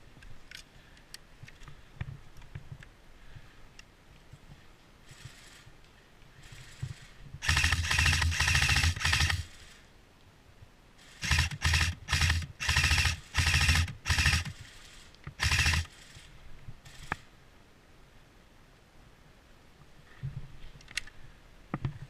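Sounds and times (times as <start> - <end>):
airsoft gun firing bursts: 6.5 - 9.8, 11.0 - 16.3.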